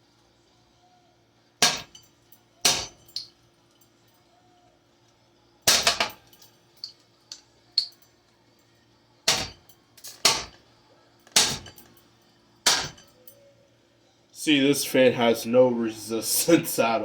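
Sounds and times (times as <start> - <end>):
small metallic clinks: 1.7 - 4.2, 5.8 - 8.3
heavy blows smashing ceiling fan: 9.3 - 9.6, 11.4 - 11.8.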